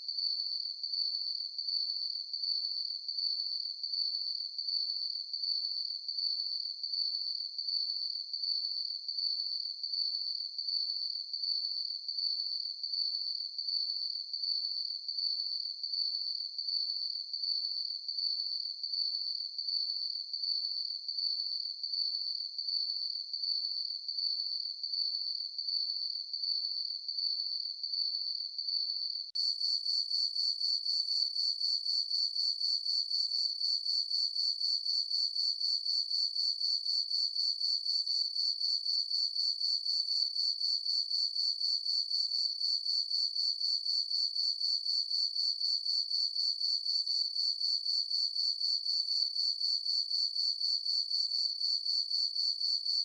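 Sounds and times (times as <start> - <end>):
crickets chirping: 29.4 - 53.0.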